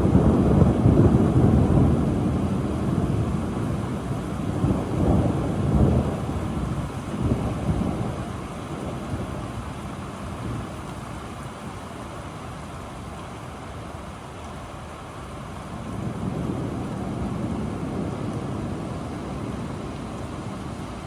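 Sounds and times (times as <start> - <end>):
distant thunder rumble: 0.0 - 11.0, 15.7 - 21.0
rain on a window: 0.0 - 21.0.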